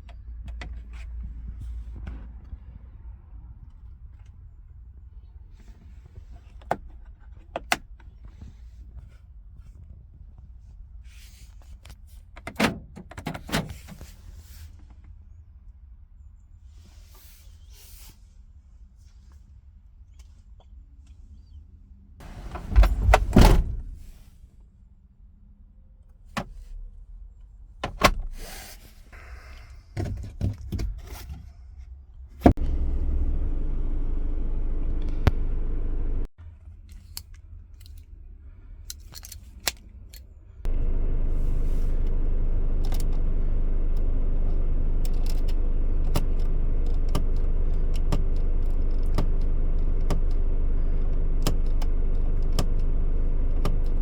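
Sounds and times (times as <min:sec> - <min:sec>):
diesel engine starting and idling: 0:32.5 - 0:36.3, 0:40.7 - 0:54.0
keys and clicks: 0:51.4 - 0:52.9.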